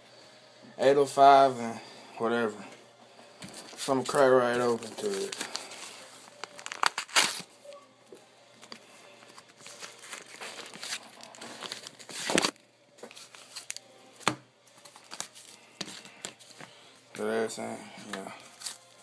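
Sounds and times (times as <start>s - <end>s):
package packaging ripping and crinkling: 4.6s - 7.5s, 8.6s - 13.9s, 14.8s - 16.4s, 18.4s - 19.0s.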